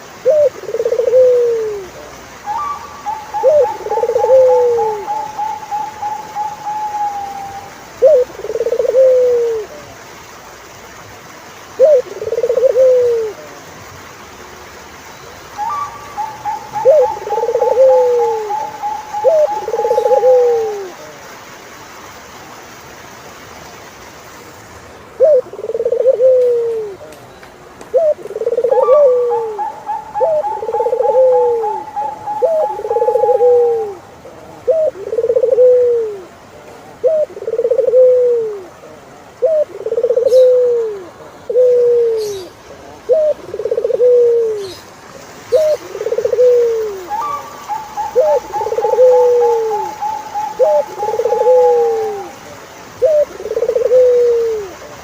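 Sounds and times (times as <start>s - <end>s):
turtle doves cooing: 0.0s - 10.0s, 11.7s - 13.7s, 15.4s - 21.3s, 25.1s - 27.2s, 27.9s - 55.0s
high trilled bird call: 2.5s - 8.2s, 15.6s - 20.6s, 47.1s - 52.1s.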